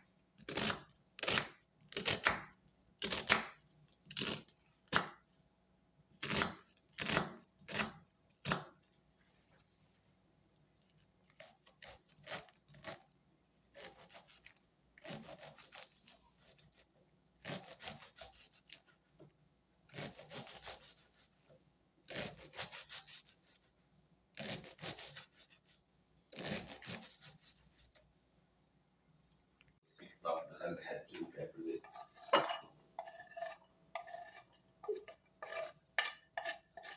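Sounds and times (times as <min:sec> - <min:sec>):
food scraping strokes: 0:31.7 - 0:36.9.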